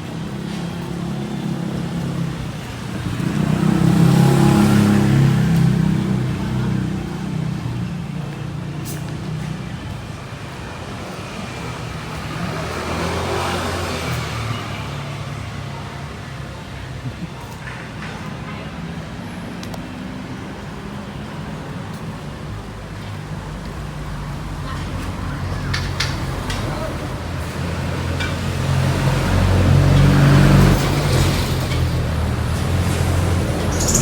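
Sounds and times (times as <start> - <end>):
vehicle engines running: 0.0 - 34.0
vehicle passing close: 27.6 - 34.0.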